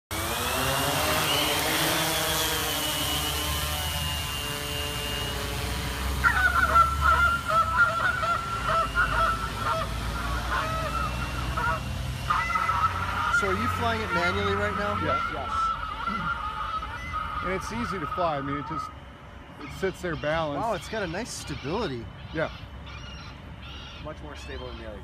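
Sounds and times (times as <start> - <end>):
drone motors whining: 0.1 - 25.0
goose-like honking calls: 6.2 - 19.0.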